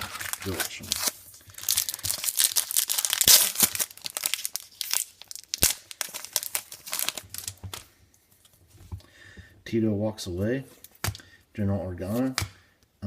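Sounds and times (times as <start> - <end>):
wrapper tearing and crinkling: 0.0 - 7.8.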